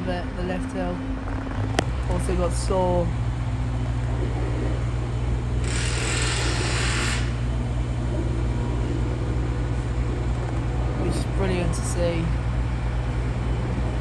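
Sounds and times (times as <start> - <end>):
construction machinery engine hum: 0.0 - 14.0
hissing burst: 5.6 - 7.5.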